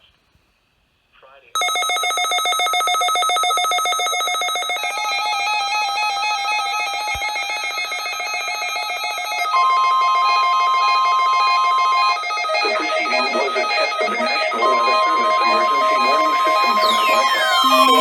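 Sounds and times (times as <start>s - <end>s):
steady warning alarm tone: 1.6s - 18.0s
warbling digital data chatter: 10.7s - 18.0s.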